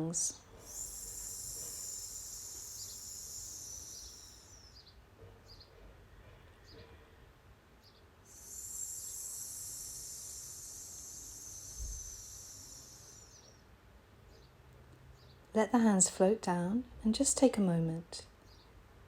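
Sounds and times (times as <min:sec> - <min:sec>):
quiet inhale: 0:00.5 - 0:04.6, 0:08.3 - 0:13.5
person whispering sss exhale: 0:00.6 - 0:04.6, 0:08.3 - 0:13.4.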